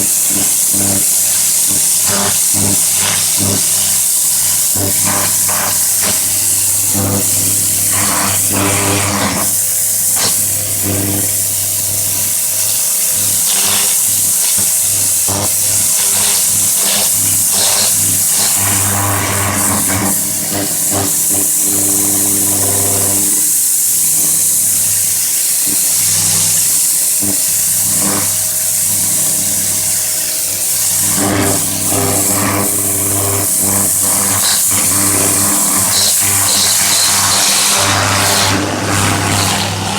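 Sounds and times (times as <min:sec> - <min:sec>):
pressure washer engine running: 0:00.0 - 0:39.9
water jet hissing: 0:00.0 - 0:39.9.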